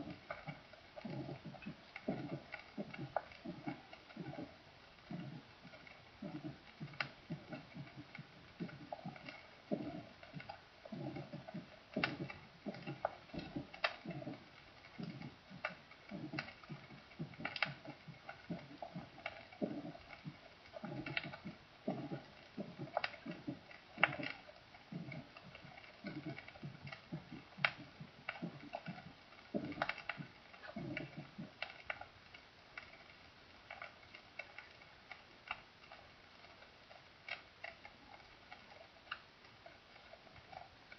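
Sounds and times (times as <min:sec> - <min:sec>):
heartbeat thuds: 0:00.0 - 0:31.6
sharp clicks: 0:00.0 - 0:40.9.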